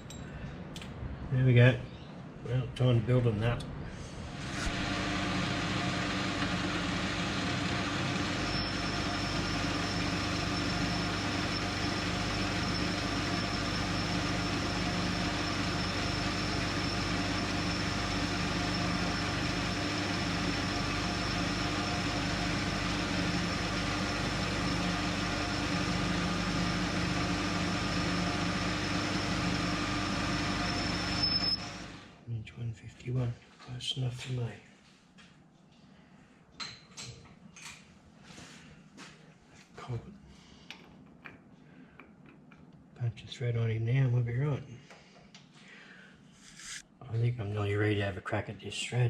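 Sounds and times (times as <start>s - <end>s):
metal lathe humming: 4.3s - 32.2s
thin high whine: 8.1s - 31.8s.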